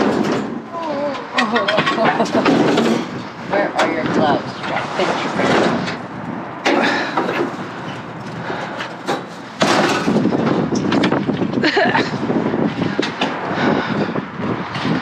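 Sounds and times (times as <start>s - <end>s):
objects knocking and clattering: 0.0s - 11.6s.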